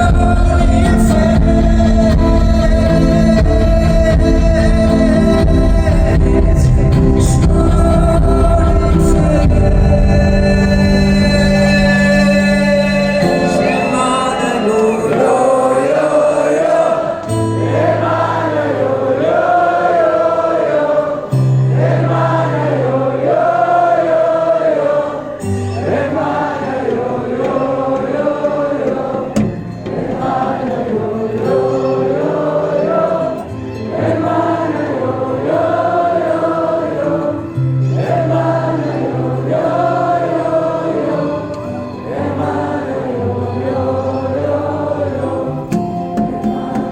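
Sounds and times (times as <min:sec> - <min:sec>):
held bass notes: 0:00.0 - 0:14.2
wordless chant-like singing: 0:00.0 - 0:46.9.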